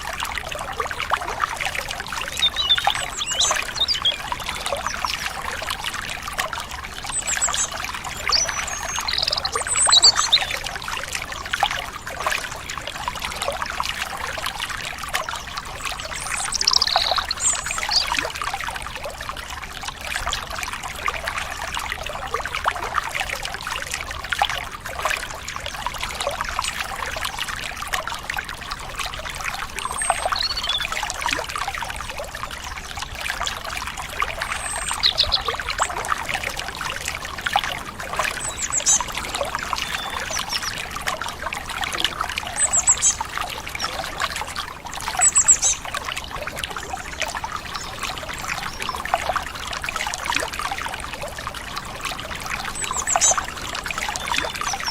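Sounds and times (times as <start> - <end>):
stream water trickling: 0.0 - 54.9
high bird chirps: 2.4 - 4.2, 7.2 - 10.5, 16.5 - 18.1, 38.4 - 40.8.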